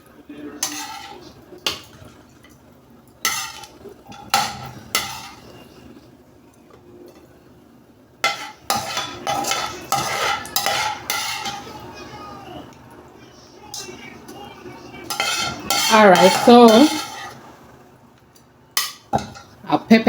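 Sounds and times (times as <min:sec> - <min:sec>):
metal spoon clinking in pot: 0:00.6 - 0:01.9, 0:03.3 - 0:05.5, 0:08.2 - 0:11.7, 0:15.1 - 0:17.4.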